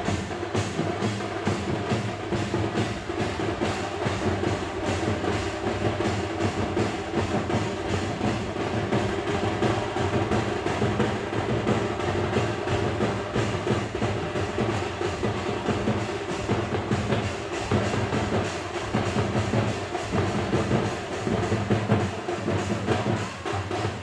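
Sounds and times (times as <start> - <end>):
fast festive drumming: 0.0 - 24.0.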